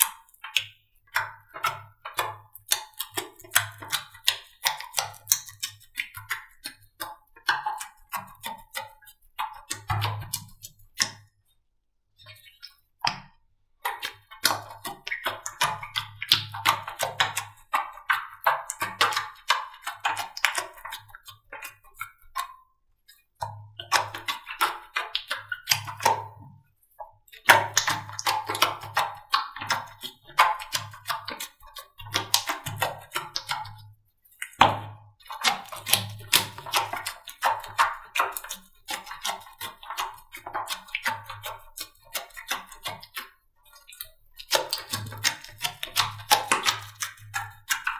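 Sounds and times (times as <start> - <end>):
slime sticky clicking and popping: 44.4 - 47.9.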